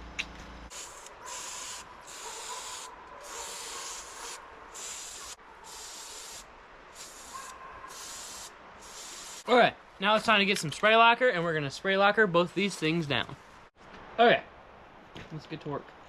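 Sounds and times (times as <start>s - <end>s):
spray paint can hissing: 0.7s - 9.5s.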